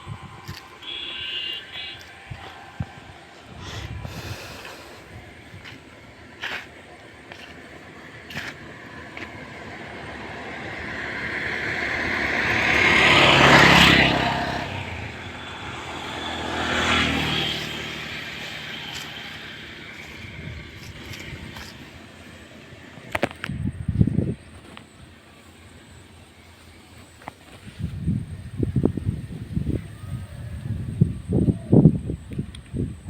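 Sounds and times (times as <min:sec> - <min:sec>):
motor vehicle passing by: 0:00.0 - 0:23.3.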